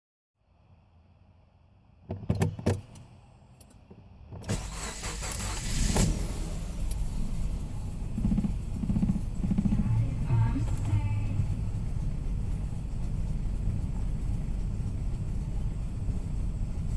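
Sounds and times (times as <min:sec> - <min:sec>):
car engine starting and idling roughly: 0:04.4 - 0:16.9.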